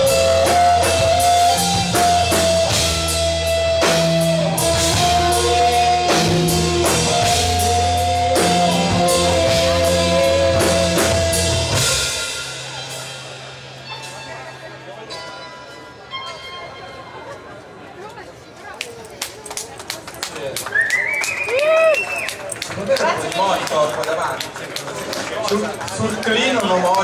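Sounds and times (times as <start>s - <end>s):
drum kit beat: 0.0s - 13.8s
rock band playing live: 0.0s - 15.4s
sustained guitar notes: 0.0s - 17.9s.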